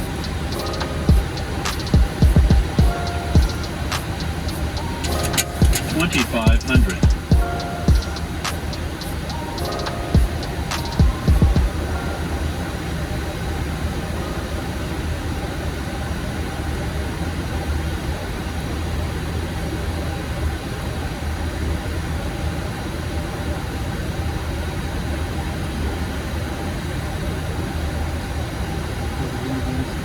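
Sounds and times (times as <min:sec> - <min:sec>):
airflow rush: 0:00.0 - 0:15.1.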